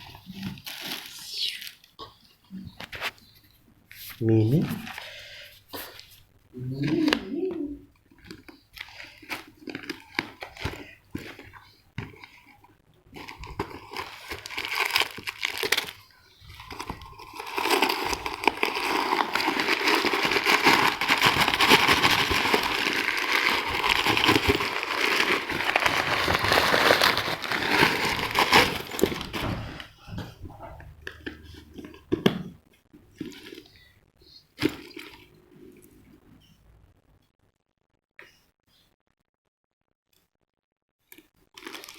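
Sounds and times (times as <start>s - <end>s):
plastic packaging crinkling: 0.0s - 2.0s, 8.1s - 30.2s, 34.5s - 35.9s, 41.5s - 41.9s.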